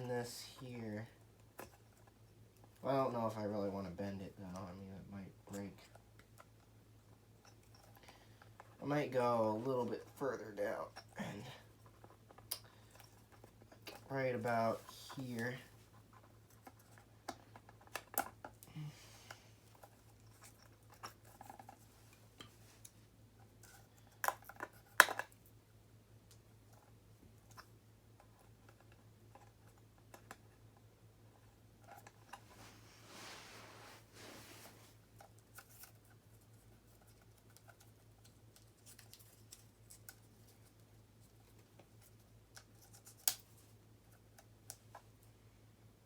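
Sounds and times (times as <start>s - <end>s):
clicks and taps handling wire: 35.1s - 45.1s.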